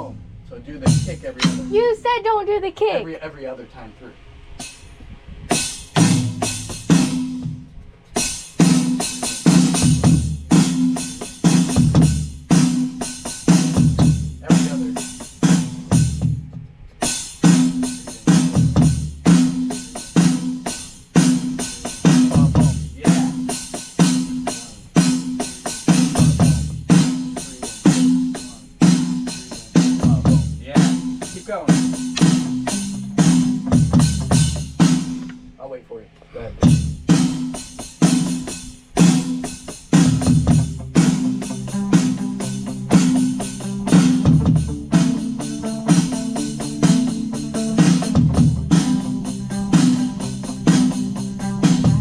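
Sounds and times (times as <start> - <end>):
deep low note: 0.0 - 1.9
drum kit playing a beat: 0.0 - 3.3, 4.5 - 35.6, 36.6 - 52.0
low repeating riff: 0.0 - 3.3, 21.4 - 35.6, 38.3 - 52.0.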